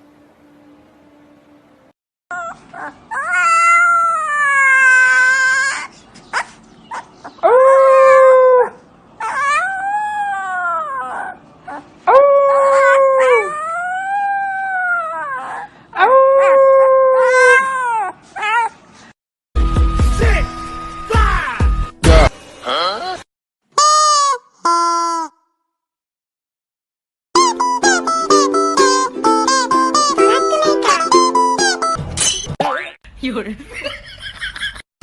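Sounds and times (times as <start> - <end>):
dog howling: 2.3 - 5.9, 7.3 - 18.7.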